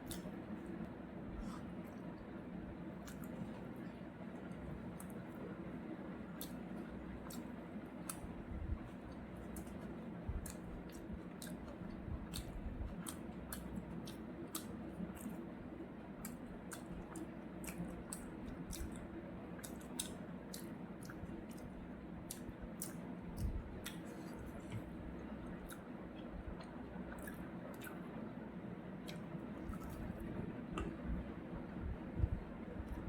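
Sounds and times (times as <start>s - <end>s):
person chewing and mouth clicks: 0.0s - 0.4s, 3.0s - 3.6s, 6.3s - 8.3s, 8.9s - 15.4s, 16.2s - 28.1s, 29.0s - 31.2s
low background hum: 0.0s - 33.0s.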